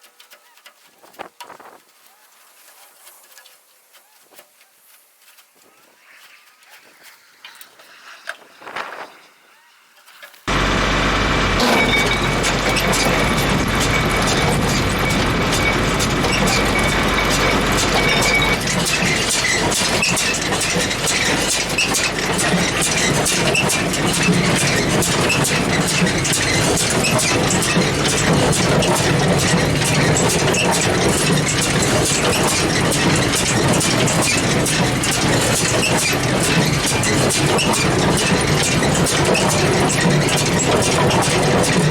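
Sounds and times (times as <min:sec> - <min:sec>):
steady high tone: 0:10.5 - 0:18.7
low hum: 0:10.5 - 0:19.9
hay baler mechanical clatter: 0:10.5 - 0:41.9
tractor engine drone: 0:10.5 - 0:41.9.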